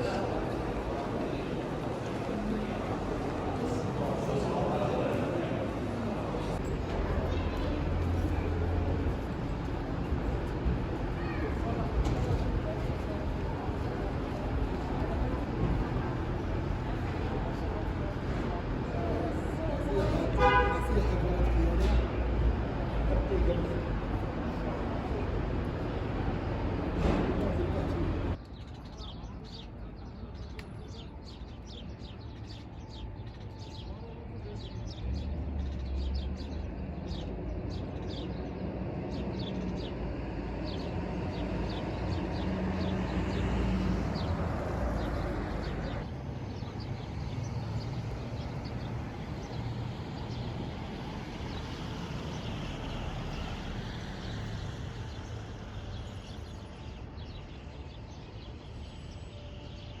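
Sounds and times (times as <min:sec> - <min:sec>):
traffic rumble: 0:00.0 - 1:00.0
small birds chirping: 0:27.6 - 1:00.0.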